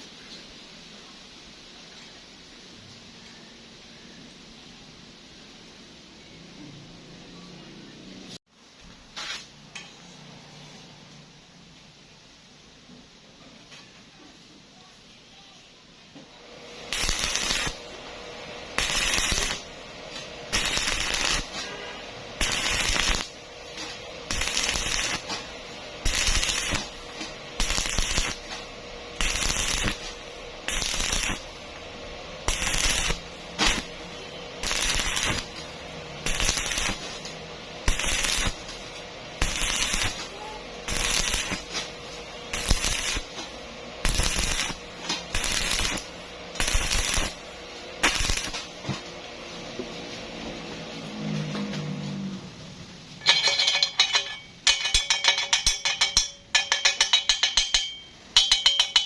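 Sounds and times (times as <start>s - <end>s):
welding arc crackling: 16.4s - 49.5s.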